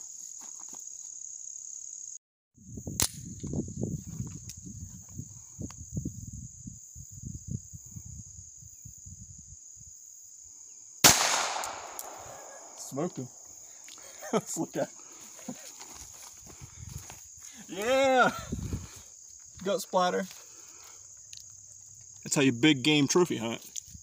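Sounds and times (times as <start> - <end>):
crickets chirring: 0.0 - 24.0
pistol shot: 11.0 - 12.8.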